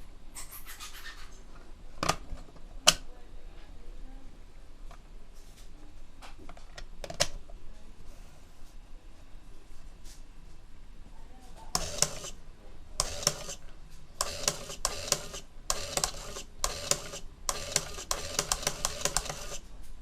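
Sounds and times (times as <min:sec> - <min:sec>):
plastic clicks and clacks: 0:11.8 - 0:12.4, 0:14.2 - 0:19.6
servomotor whirring: 0:11.8 - 0:12.4, 0:13.0 - 0:13.6, 0:14.2 - 0:19.6.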